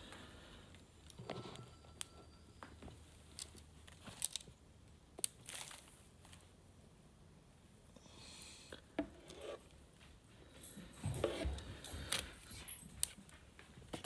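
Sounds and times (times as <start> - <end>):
packaging crinkling: 3.3 - 4.6, 5.2 - 6.4.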